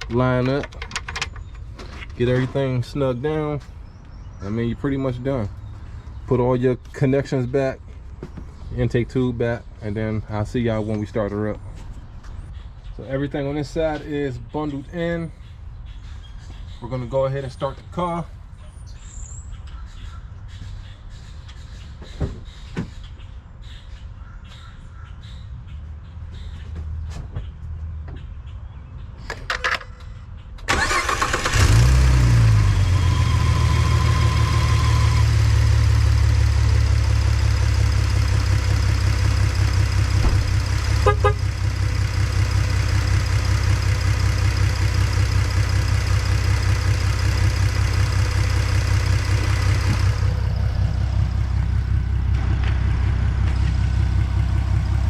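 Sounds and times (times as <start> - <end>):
engine ticking: 30.7 - 33.0, 34.1 - 55.0
starter cranking engine: 30.7 - 35.4, 37.2 - 55.0
car engine idling: 30.7 - 55.0.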